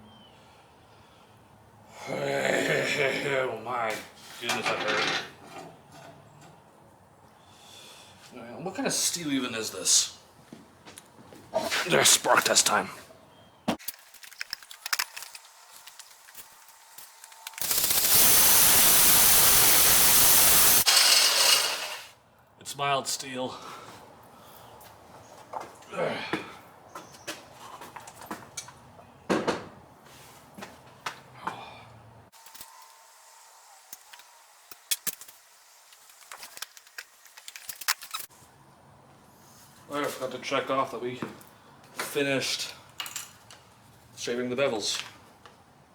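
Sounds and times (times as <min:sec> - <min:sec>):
grinder grinding steel: 0:17.6 - 0:22.2.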